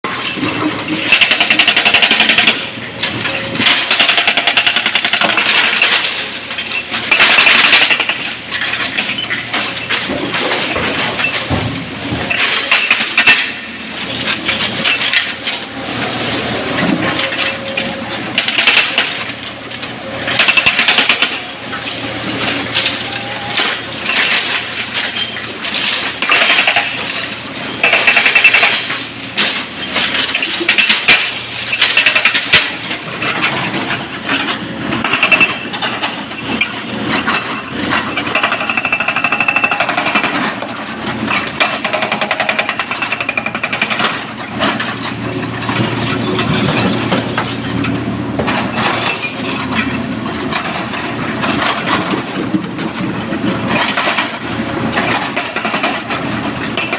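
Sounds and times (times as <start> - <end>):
rock and steel clattering: 27.8 - 56.9.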